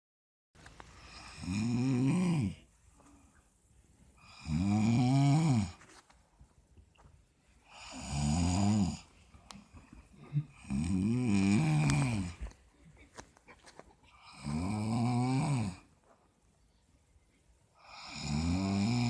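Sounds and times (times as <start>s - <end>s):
person snoring: 1.0s - 2.7s, 4.2s - 5.8s, 7.7s - 9.1s, 10.4s - 12.4s, 14.2s - 15.9s, 17.8s - 19.0s.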